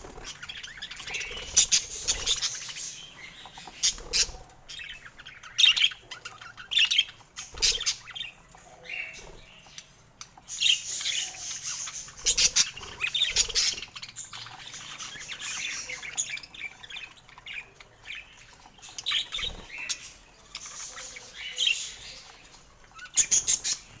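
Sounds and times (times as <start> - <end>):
budgerigars chirping and squawking: 0.0 - 24.0.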